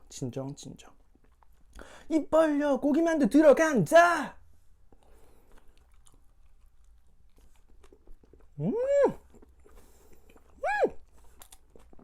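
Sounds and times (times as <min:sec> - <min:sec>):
person chewing: 0:01.0 - 0:01.9, 0:04.8 - 0:12.0
vocal exclamation of delight: 0:08.6 - 0:09.2, 0:10.6 - 0:11.0.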